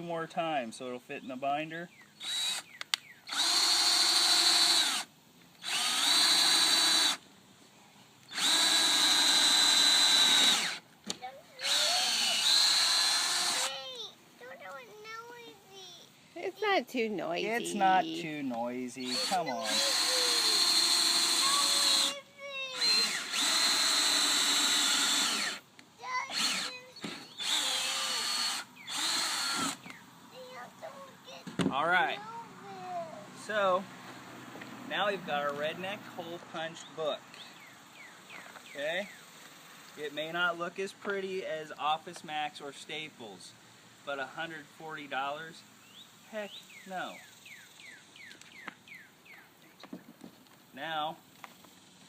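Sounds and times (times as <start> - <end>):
cordless drill drilling through paper: 2.2 - 2.7, 3.3 - 7.2, 8.3 - 10.8, 11.6 - 13.8, 19.0 - 25.6, 26.3 - 29.9.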